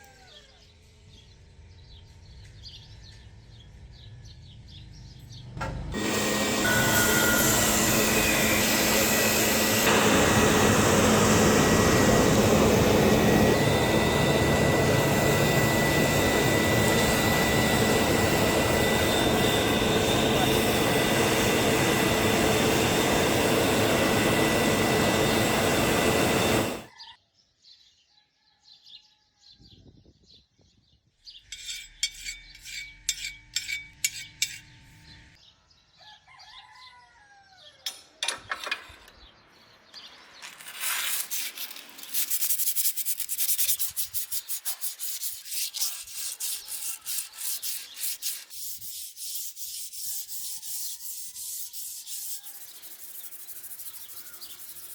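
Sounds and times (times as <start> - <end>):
loud machine noise: 5.6 - 26.9, 51.3 - 54.9
birds chirping: 12.4 - 27.2, 51.4 - 54.9
hand scraping on metal: 31.5 - 34.8, 40.5 - 52.8.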